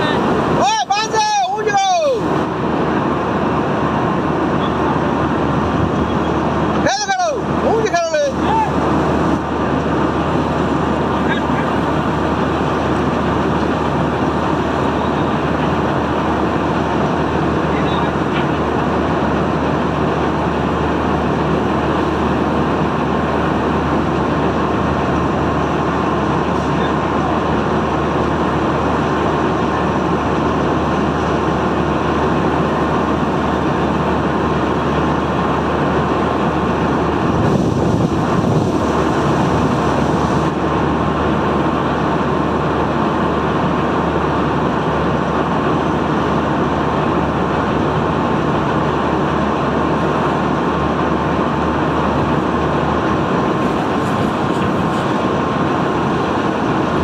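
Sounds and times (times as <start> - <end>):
excavator diesel engine: 0.0 - 57.0.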